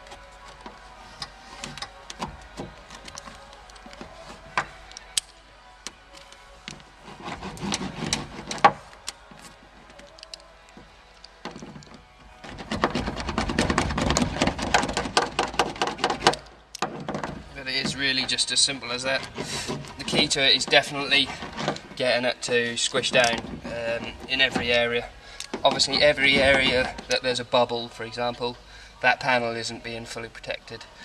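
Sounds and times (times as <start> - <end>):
faint background music: 0.0 - 31.0
brisk rapid rubbing: 6.6 - 10.5, 11.2 - 27.2.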